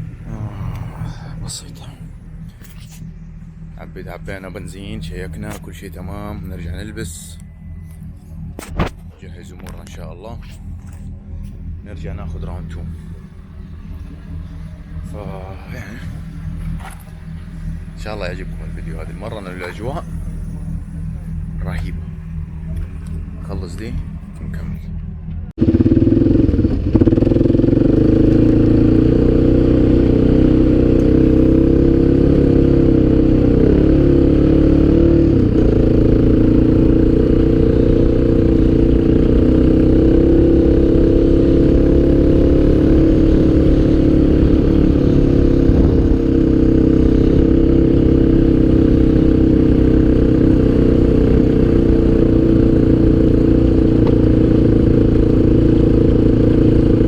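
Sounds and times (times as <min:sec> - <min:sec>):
atv engine droning: 0:00.0 - 0:57.0.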